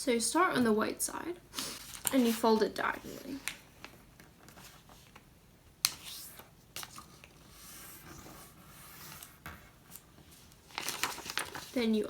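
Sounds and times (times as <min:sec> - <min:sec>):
paper rustling: 0:01.7 - 0:12.0
paper crackle: 0:09.9 - 0:12.0.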